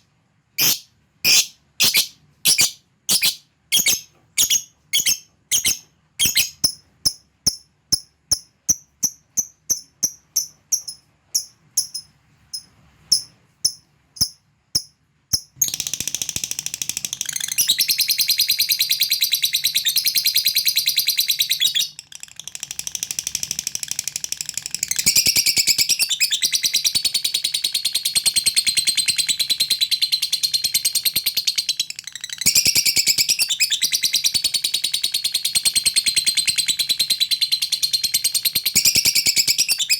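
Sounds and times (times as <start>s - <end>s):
lovebird chirping: 0.6s - 16.4s, 17.2s - 22.3s, 24.9s - 39.9s
lovebird chattering trill: 0.6s - 22.0s.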